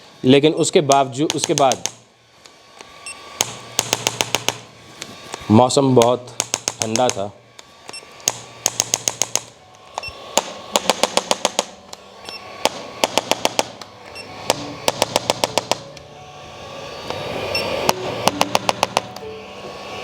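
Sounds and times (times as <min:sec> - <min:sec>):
rapid clicking thrusts: 0:00.9 - 0:16.0.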